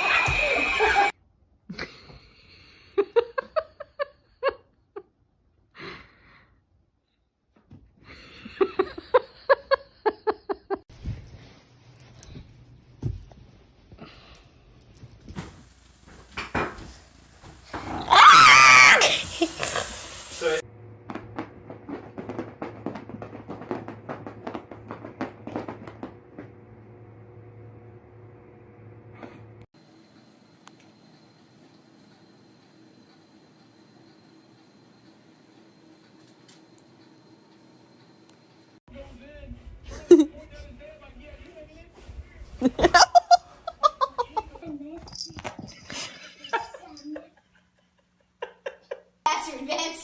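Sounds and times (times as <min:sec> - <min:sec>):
person laughing: 0:08.1 - 0:10.8, 0:19.0 - 0:20.6, 0:39.9 - 0:40.6, 0:42.6 - 0:44.6
steady low hum: 0:20.0 - 0:42.6.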